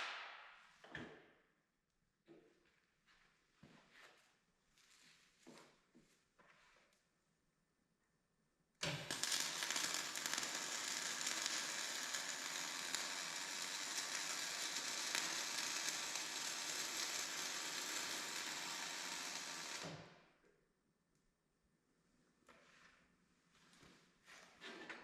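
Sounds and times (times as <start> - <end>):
arc welding crackling sizzle: 8.8 - 20.2.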